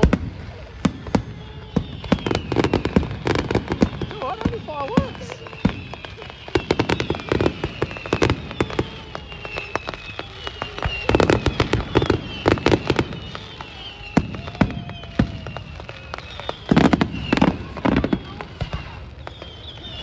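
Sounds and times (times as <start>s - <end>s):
fireworks bangs and crackles: 0.0s - 20.0s
faint descending high tone: 7.9s - 16.6s.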